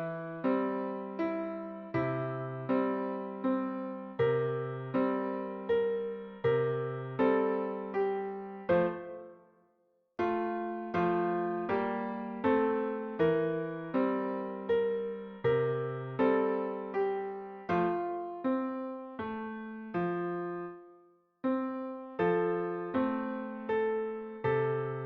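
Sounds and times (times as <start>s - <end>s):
slow piano chords: 0.0s - 9.6s, 10.2s - 25.0s.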